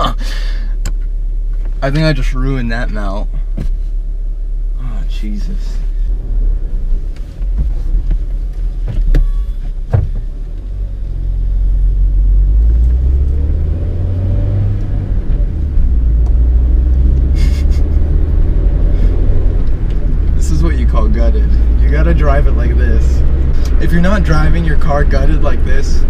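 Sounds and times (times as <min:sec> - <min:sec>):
car engine and road rumble: 0:00.0 - 0:26.0
sharp knocks: 0:09.9 - 0:10.3.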